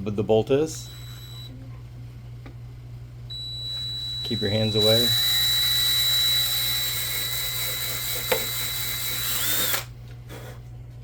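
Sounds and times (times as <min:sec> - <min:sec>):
power drill whining: 0:03.3 - 0:09.9.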